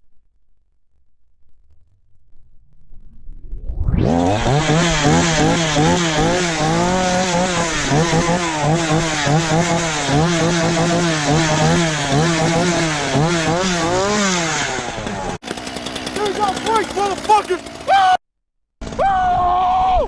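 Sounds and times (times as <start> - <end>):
chainsaw engine revving: 4.0 - 18.2.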